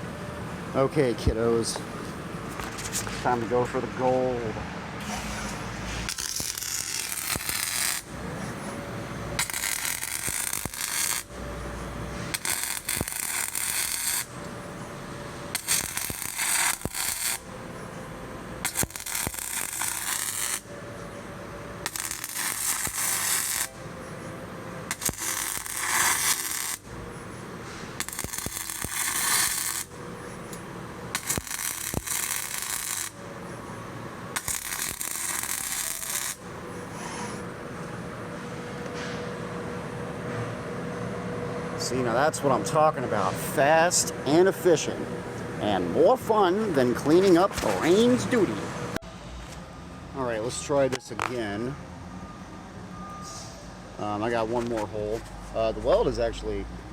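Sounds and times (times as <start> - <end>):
welding arc crackling: 5.0 - 20.8, 21.8 - 24.0, 24.8 - 33.4, 34.3 - 36.6.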